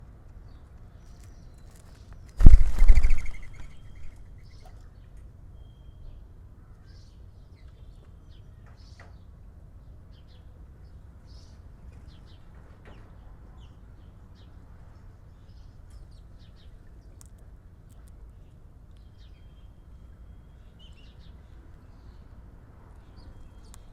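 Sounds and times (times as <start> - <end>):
small birds chirping: 1.0 - 4.7
wings fluttering: 1.8 - 4.3.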